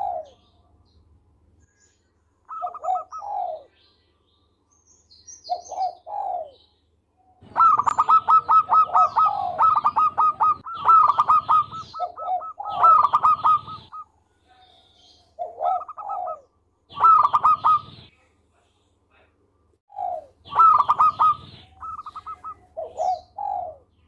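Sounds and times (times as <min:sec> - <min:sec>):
dove cooing: 0:00.0 - 0:00.5, 0:02.5 - 0:03.7, 0:05.5 - 0:06.7, 0:07.4 - 0:18.1, 0:19.9 - 0:24.0
small birds chirping: 0:00.0 - 0:24.0.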